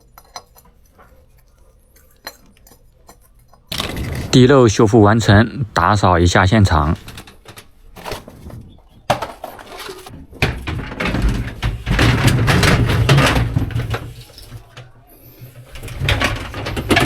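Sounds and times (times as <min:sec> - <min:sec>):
scraping and rustling: 0:07.0 - 0:17.0.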